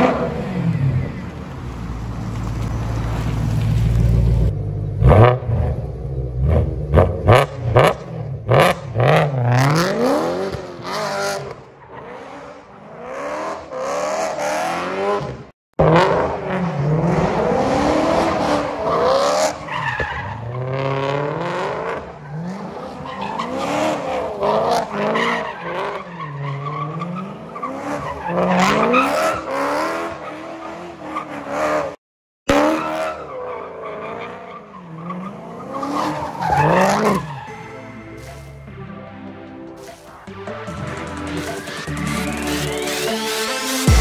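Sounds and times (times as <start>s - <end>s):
car engine revving: 1.9s - 20.0s.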